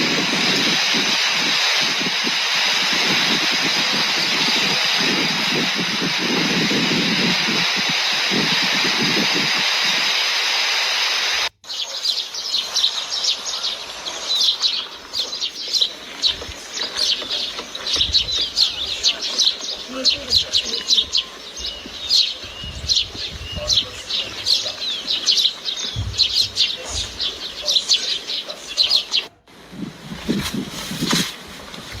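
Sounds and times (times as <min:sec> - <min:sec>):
steady rushing noise: 0:00.0 - 0:11.5
birds chirping rapidly: 0:00.0 - 0:31.2.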